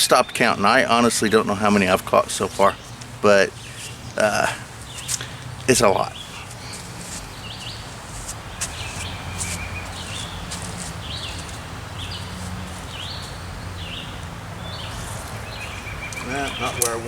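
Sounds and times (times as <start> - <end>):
bird calling: 0.0 - 17.0.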